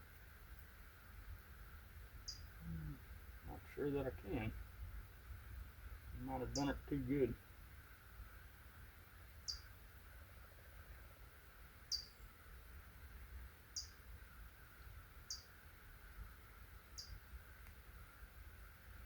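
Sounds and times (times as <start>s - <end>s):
quiet steady hiss: 0.0s - 19.0s
small bird chirps sliding downward: 9.4s - 9.7s, 11.9s - 12.2s.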